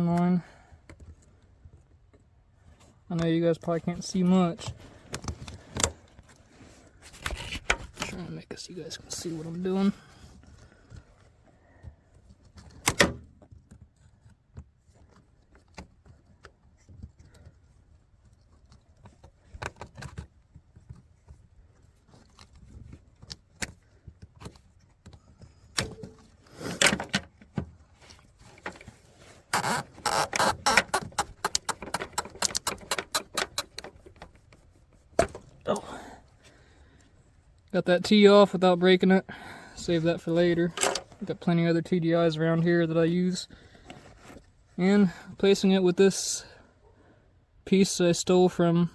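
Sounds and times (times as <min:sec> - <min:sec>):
clicks and knocks: 0:29.6 - 0:34.0
rapid clicking and rattling: 0:29.6 - 0:34.4.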